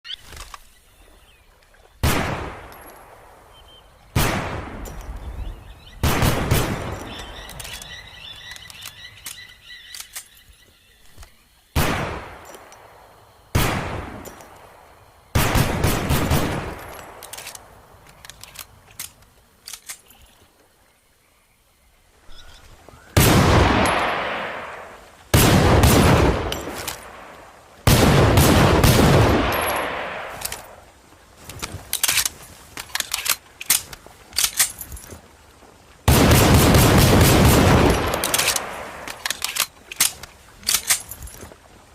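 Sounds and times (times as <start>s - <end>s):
light metallic clicks: 16.8s - 20.4s
pistol shots echoing: 23.2s - 30.7s, 36.1s - 39.2s.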